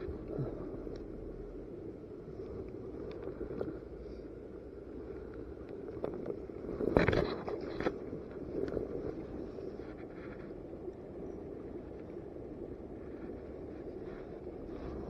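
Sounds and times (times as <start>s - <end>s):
knocks and scrapes: 6.8s - 8.0s.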